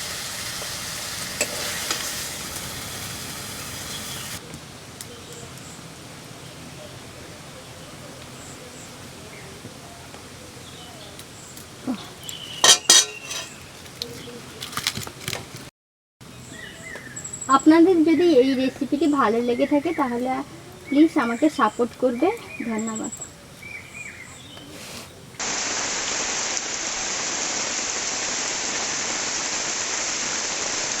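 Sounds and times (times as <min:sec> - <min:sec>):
steady hiss: 0:00.0 - 0:14.1, 0:17.6 - 0:31.0
metal utensil clinking on cookware: 0:01.4 - 0:02.1, 0:12.6 - 0:13.6
light clicks and scrapes: 0:12.8 - 0:15.7, 0:24.5 - 0:25.2.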